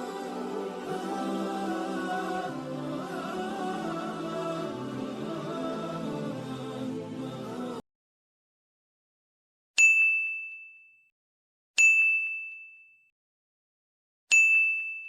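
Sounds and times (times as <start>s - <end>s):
bright bell dings: 9.8s - 11.0s, 11.8s - 13.0s, 14.3s - 15.0s.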